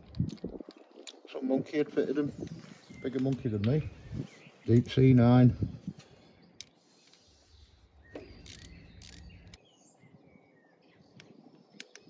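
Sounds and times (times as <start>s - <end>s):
faint bird chirps: 5.9s - 12.0s
sharp clicks: 8.2s - 9.6s, 11.2s - 12.0s.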